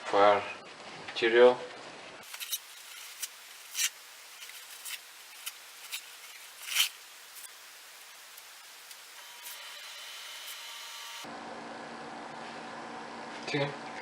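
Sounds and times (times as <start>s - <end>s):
paper towel tearing: 2.2s - 9.2s.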